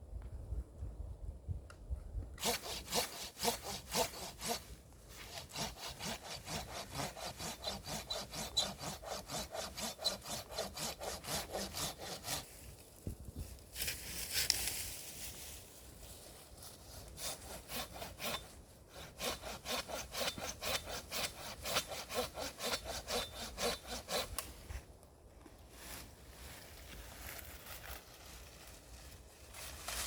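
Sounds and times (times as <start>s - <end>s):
hand saw cutting wood: 2.4s - 12.6s, 16.9s - 24.5s
rustling scrape: 25.7s - 30.0s.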